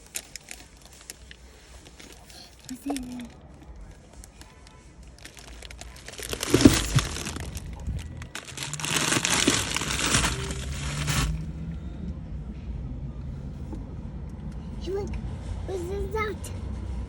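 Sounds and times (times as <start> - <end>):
rustling and crinkling handling noise: 0.0 - 11.5.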